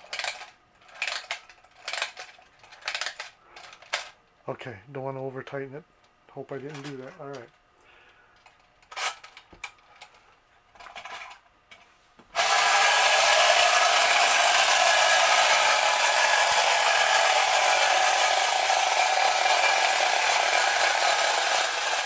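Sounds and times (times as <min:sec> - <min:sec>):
clockwork toy motor whirring: 0:12.4 - 0:22.0.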